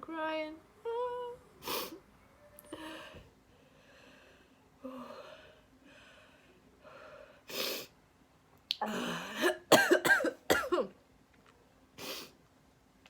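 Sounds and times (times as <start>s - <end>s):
woman sniffing: 7.5s - 7.9s, 12.0s - 12.4s.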